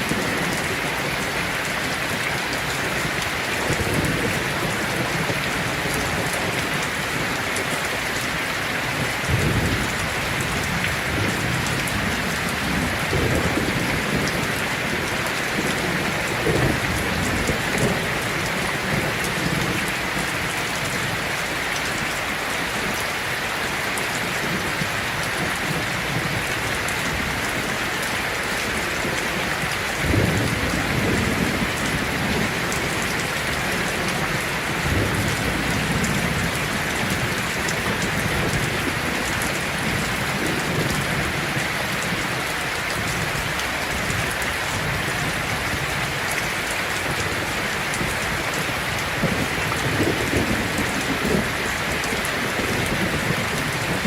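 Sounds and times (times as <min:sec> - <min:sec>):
heavy rain on a tin roof: 0:00.0 - 0:54.0
thunder rumbling: 0:08.9 - 0:20.3, 0:28.6 - 0:46.1, 0:47.0 - 0:54.0.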